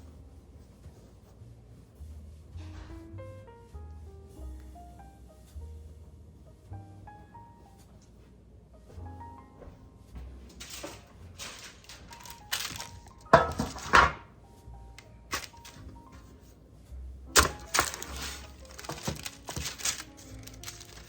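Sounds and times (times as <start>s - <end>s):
soft background music: 0.0s - 21.0s
kitchen clatters and knocks: 10.2s - 14.4s, 15.3s - 16.3s, 17.3s - 21.0s.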